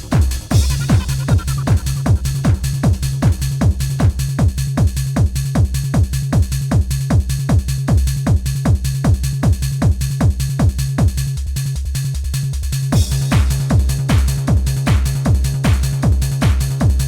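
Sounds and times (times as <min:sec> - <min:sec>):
techno dance music: 0:00.0 - 0:04.9, 0:12.9 - 0:17.0.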